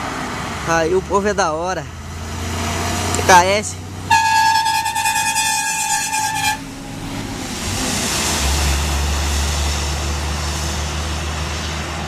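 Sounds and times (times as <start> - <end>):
heavy engine drone: 0.0 - 12.0
road noise: 0.0 - 12.0
vehicle horn: 4.1 - 6.7.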